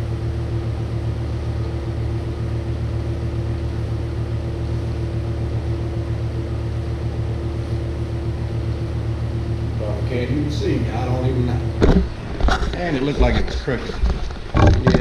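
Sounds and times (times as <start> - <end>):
low mechanical hum: 0.0 - 15.0.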